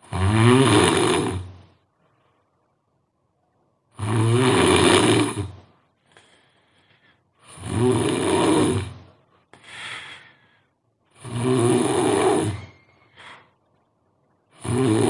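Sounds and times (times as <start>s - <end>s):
person snoring loudly: 0.0s - 1.6s, 3.9s - 5.7s, 7.4s - 9.1s, 11.1s - 12.8s, 14.5s - 15.0s
faint breath out: 9.2s - 10.9s, 12.5s - 13.7s.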